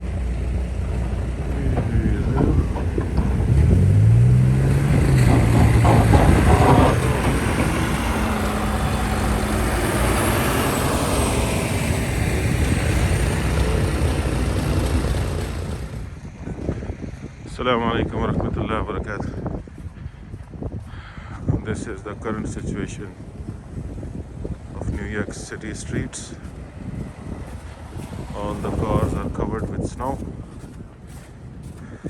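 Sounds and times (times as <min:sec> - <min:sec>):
large vehicle engine passing: 0:00.0 - 0:16.2, 0:23.1 - 0:31.8
low traffic rumble: 0:00.0 - 0:32.0.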